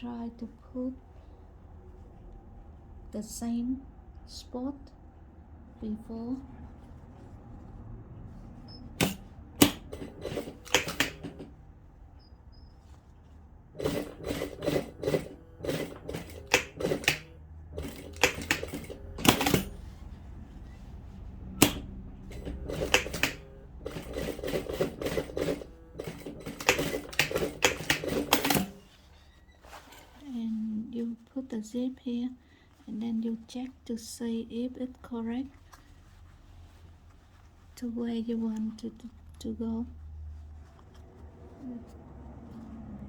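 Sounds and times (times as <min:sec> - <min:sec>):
sewing machine stitching: 0:08.7 - 0:11.6, 0:13.7 - 0:20.0, 0:21.5 - 0:29.0.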